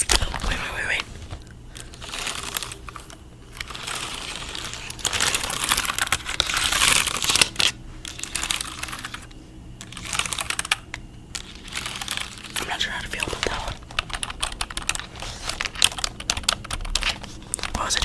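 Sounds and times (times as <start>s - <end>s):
keyboard typing: 1.7s - 18.0s.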